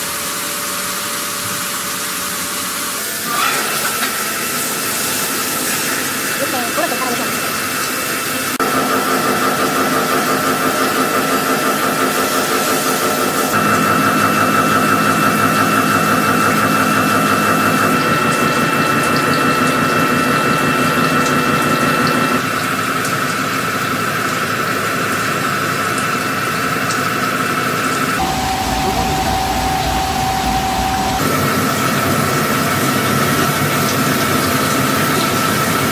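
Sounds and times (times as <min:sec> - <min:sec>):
deep rumble: 0:28.2 - 0:31.3
machine tool whining: 0:28.2 - 0:31.5.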